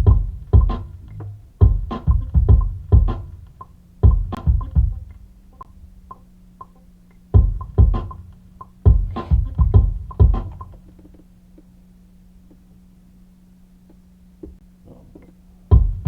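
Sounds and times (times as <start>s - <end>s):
programmed drum beat: 0.0s - 11.2s, 15.7s - 16.0s.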